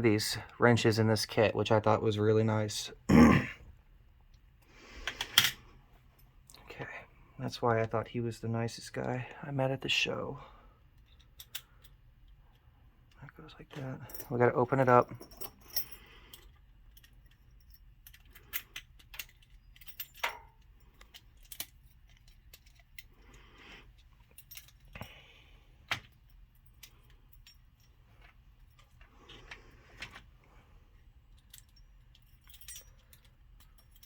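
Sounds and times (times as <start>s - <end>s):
metal padlock parts clicking: 15.2s - 23.3s.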